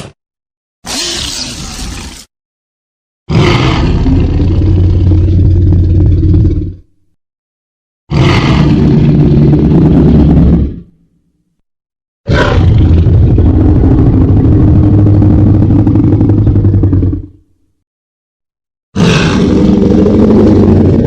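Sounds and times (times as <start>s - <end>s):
deep growling creature roar: 3.3s - 6.9s, 8.1s - 11.0s, 12.3s - 17.5s, 19.0s - 21.0s.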